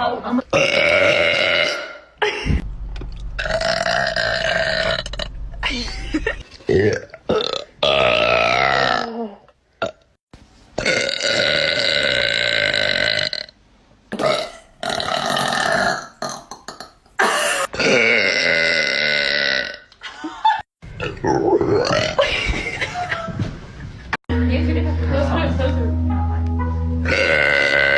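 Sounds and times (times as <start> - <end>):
girl burping: 17.2 - 19.8.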